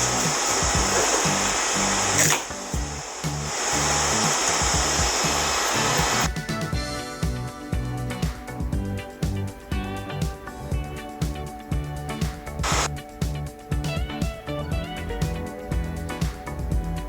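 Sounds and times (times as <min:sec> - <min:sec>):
hot air blower hissing: 0:00.0 - 0:06.4, 0:12.5 - 0:12.9
background music: 0:00.0 - 0:17.0.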